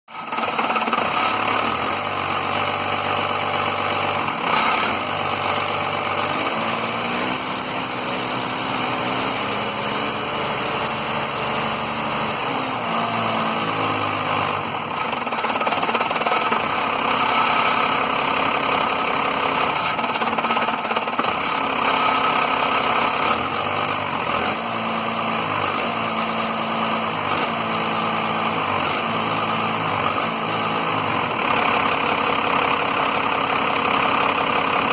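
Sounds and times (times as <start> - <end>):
diesel engine idling roughly: 0.1 - 34.9.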